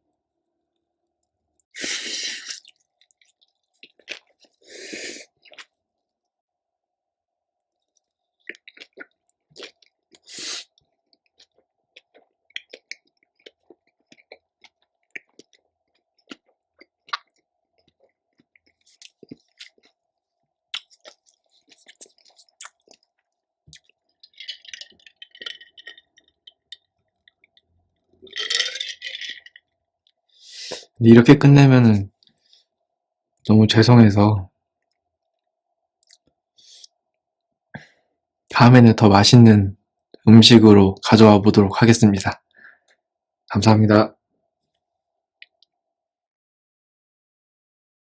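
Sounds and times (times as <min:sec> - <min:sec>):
soft chewing: 0:01.2 - 0:06.3, 0:07.6 - 0:31.0, 0:32.1 - 0:32.8, 0:34.8 - 0:38.0
wet mouth clicks and smacks: 0:11.2 - 0:20.0, 0:20.7 - 0:27.7, 0:36.0 - 0:36.4.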